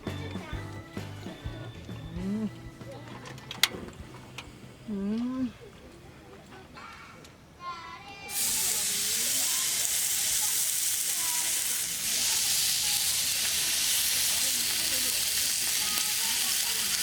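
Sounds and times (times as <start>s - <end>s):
food sizzling in a hot pan: 8.3s - 17.0s.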